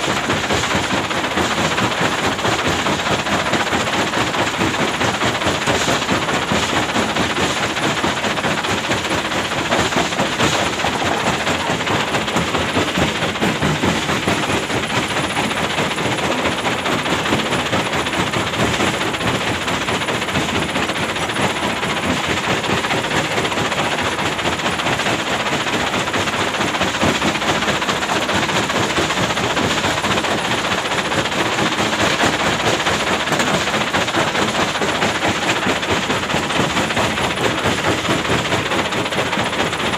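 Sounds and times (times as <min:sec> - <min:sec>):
diesel engine running with clatter: 0:00.0 - 0:39.9.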